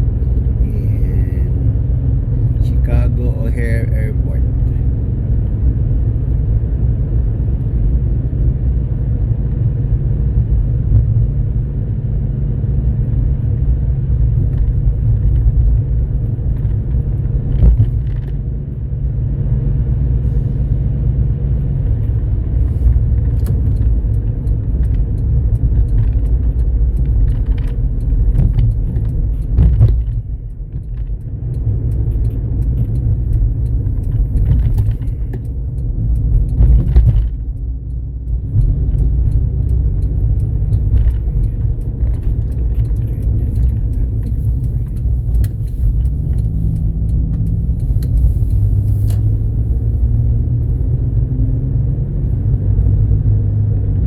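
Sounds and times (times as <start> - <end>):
car engine rumble inside cabin: 0.0 - 54.0
road noise: 0.0 - 54.0.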